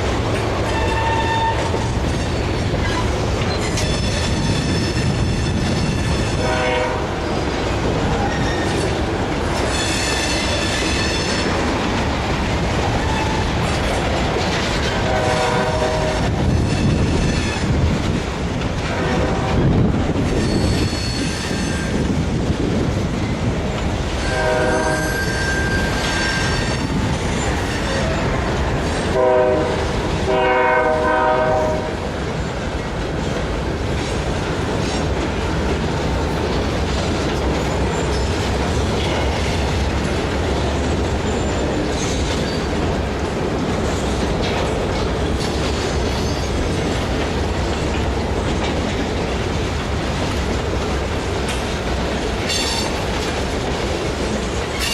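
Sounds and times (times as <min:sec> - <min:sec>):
long horn blasts: 0:00.6 - 0:01.9, 0:06.3 - 0:07.2, 0:15.0 - 0:16.4, 0:18.9 - 0:19.7, 0:24.2 - 0:26.5, 0:29.1 - 0:32.0.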